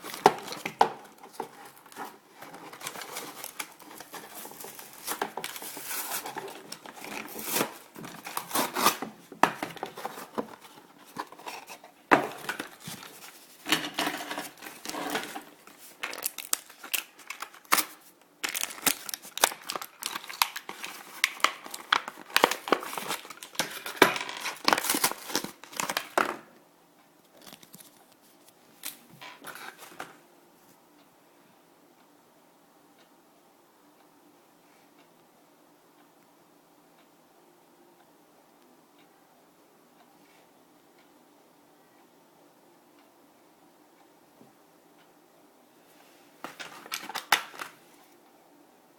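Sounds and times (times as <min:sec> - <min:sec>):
packaging crinkling and tearing: 0:00.0 - 0:26.2, 0:27.3 - 0:28.1, 0:46.5 - 0:47.8.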